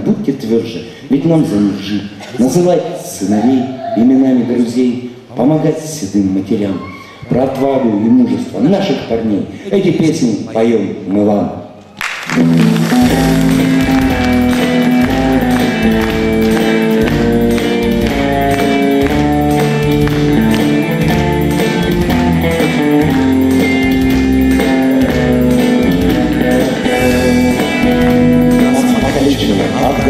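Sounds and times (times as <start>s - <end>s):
live band playing: 12.2s - 30.0s.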